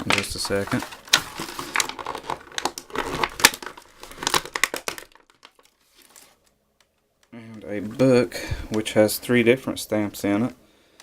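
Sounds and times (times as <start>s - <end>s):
plastic toy pieces handled: 0.0s - 7.0s
plastic packaging crinkling: 0.0s - 8.8s.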